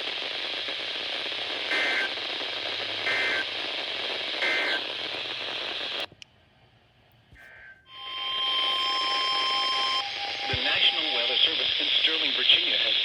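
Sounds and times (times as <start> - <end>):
radio broadcast hiss: 0.0 - 6.1, 7.3 - 13.0
warbling data tones: 1.6 - 2.2, 3.0 - 3.5, 4.4 - 4.9, 7.4 - 12.7.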